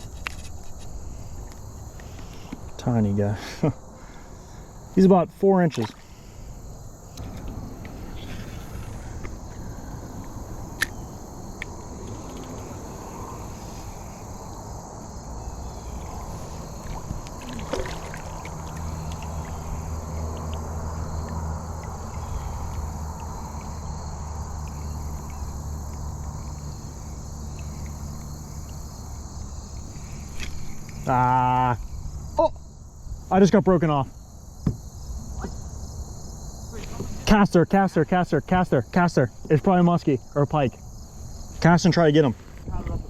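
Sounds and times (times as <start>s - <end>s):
low steady hum: 0.0s - 33.4s
insects chirring: 0.0s - 43.0s.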